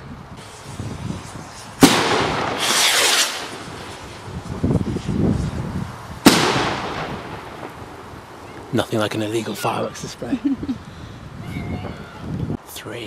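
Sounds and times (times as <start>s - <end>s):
hissing firework burst: 0.3s - 12.4s
firework shell bangs: 1.8s - 4.0s, 6.2s - 8.7s.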